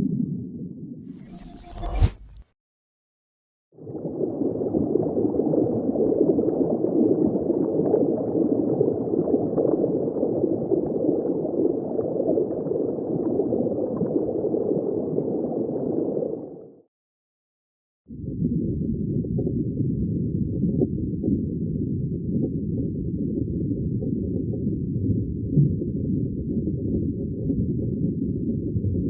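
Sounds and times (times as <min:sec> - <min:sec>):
underwater bubbling and churning: 0:03.8 - 0:16.6.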